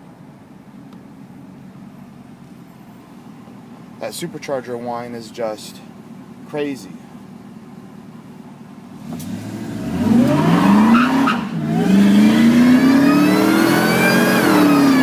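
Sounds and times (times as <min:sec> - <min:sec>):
supercharger whine: 0:08.8 - 0:15.0
engine accelerating hard: 0:09.0 - 0:15.0.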